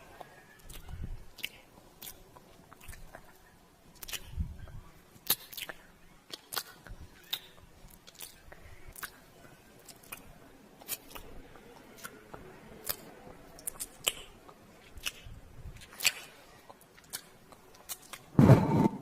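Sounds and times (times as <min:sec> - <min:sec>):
kissing lip smacks: 0:04.0 - 0:04.4, 0:05.2 - 0:09.2, 0:12.8 - 0:18.3.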